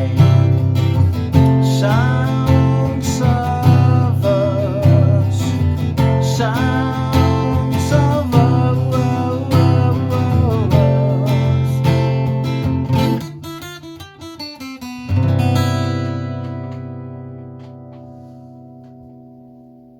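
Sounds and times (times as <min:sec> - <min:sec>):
acoustic guitar strumming: 0:00.0 - 0:19.9.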